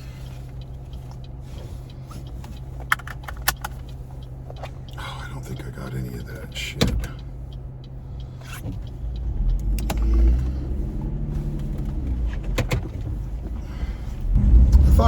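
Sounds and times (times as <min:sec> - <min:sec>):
car engine rumble from cabin: 0:00.0 - 0:15.0.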